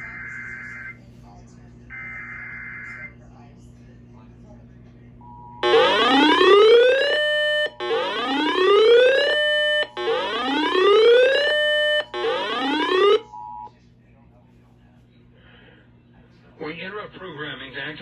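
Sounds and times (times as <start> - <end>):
rising electronic siren wails: 5.6 - 13.6.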